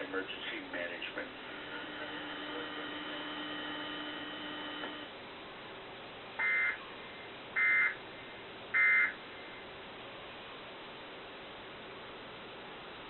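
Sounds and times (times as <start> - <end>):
steady background hum: 0.0 - 13.0
buzzy digital data tone bursts: 0.6 - 5.1.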